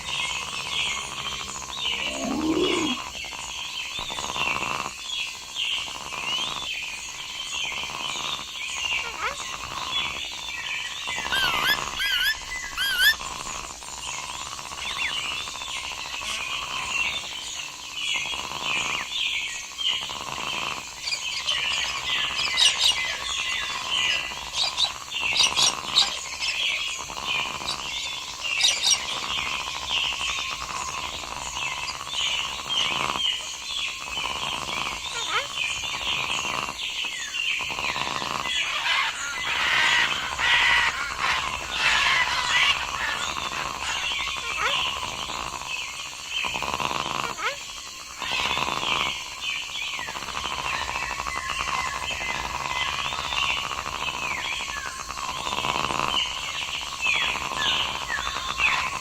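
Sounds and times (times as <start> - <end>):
birds chirping and calling: 0.0 - 3.2, 8.8 - 13.3, 21.1 - 46.6, 49.5 - 59.0
bird trills: 0.4 - 3.1, 11.2 - 13.2.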